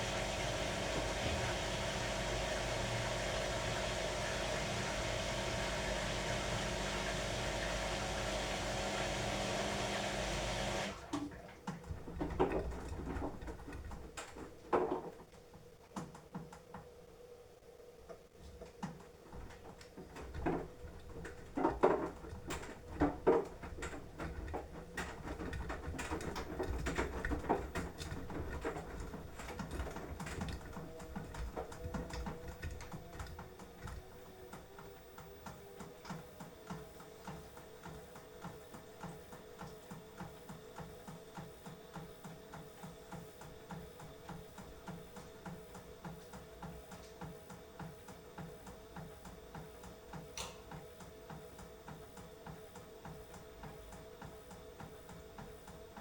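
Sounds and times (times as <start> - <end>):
washing machine drum thuds: 0.0 - 11.0
laundry and water tumbling: 0.0 - 15.1, 19.2 - 34.1
washing machine motor hum: 0.0 - 15.6, 18.2 - 56.0.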